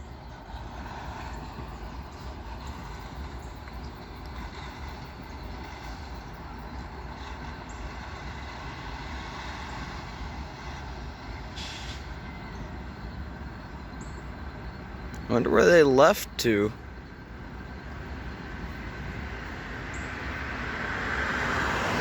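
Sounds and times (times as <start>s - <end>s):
short hiss: 11.6s - 12.1s.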